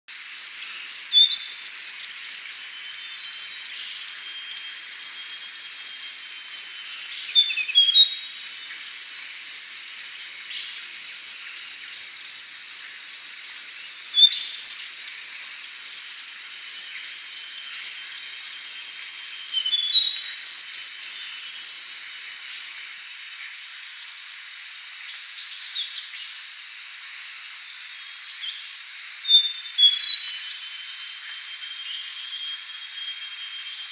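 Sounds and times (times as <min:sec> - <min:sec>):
warbler singing: 0:00.1 - 0:22.4, 0:29.3 - 0:33.2.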